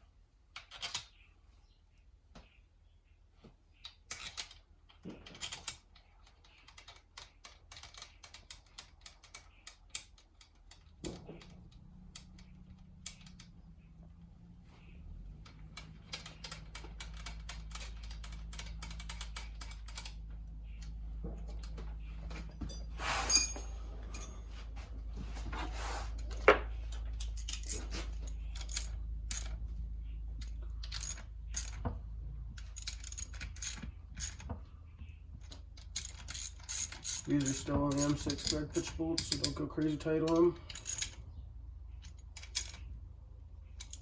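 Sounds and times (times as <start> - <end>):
metal bolts clicking and clinking: 0.5 - 1.2, 3.8 - 14.6, 15.2 - 24.8, 26.2 - 34.7, 35.3 - 43.0, 43.6 - 44.0
ringing metal clink: 22.5 - 24.6.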